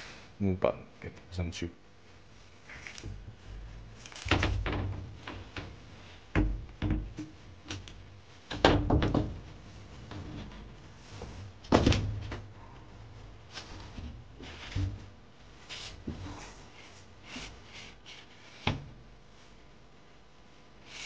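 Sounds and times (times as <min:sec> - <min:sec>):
wooden boards knocking: 0:06.3 - 0:07.4, 0:08.5 - 0:09.5.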